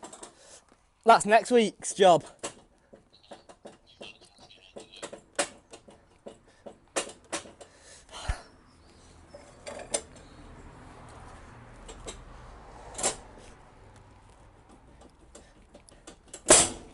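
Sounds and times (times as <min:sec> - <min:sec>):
metal tools clinking and knocking: 0:09.3 - 0:10.3.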